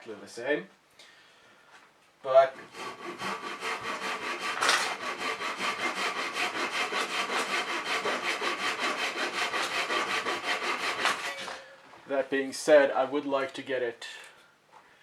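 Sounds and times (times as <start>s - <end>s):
hand saw cutting wood: 2.6s - 11.7s.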